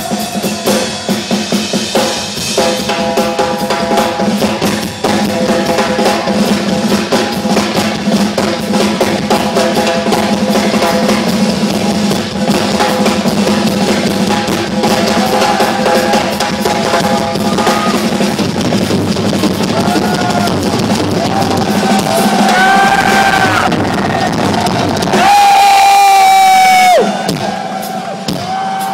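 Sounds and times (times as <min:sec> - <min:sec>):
crowd cheering and whistling: 0:00.0 - 0:01.6, 0:14.8 - 0:18.2, 0:19.6 - 0:28.9
drum kit solo: 0:00.0 - 0:28.9.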